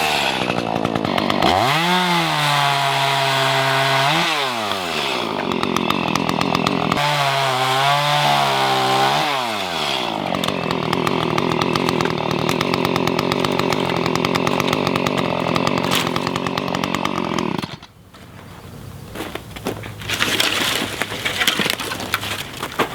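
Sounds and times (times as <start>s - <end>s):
chainsaw cutting branches: 0.0s - 18.0s.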